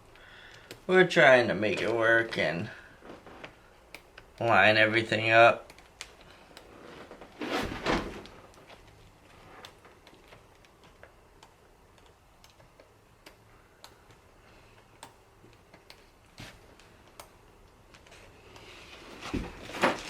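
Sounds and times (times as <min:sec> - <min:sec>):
faint clicks and taps: 0:00.2 - 0:00.9, 0:03.0 - 0:04.6, 0:05.6 - 0:07.3, 0:08.2 - 0:19.5
rustle and knock: 0:05.8 - 0:11.2, 0:17.9 - 0:20.0.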